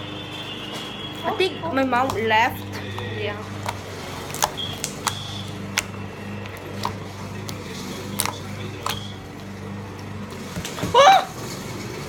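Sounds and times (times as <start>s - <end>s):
low electrical hum: 0.0s - 12.0s.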